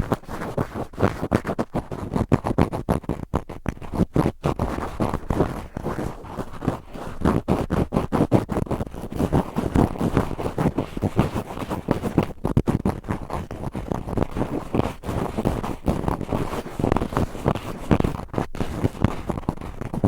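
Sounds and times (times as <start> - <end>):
cotton swab scraping microphone: 0.0 - 20.0.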